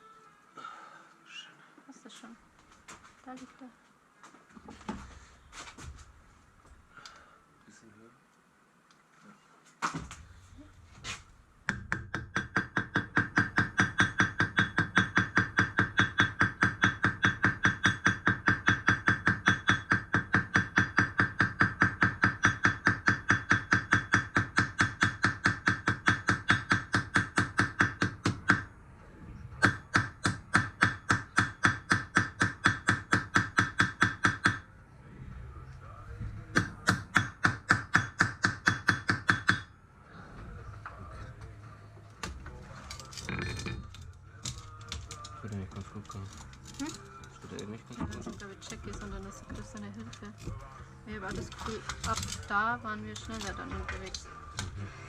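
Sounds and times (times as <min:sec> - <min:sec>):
hammer striking metal rivets: 0:11.7 - 0:28.7, 0:29.6 - 0:34.6, 0:36.6 - 0:39.7, 0:42.2 - 0:45.4, 0:51.3 - 0:52.5.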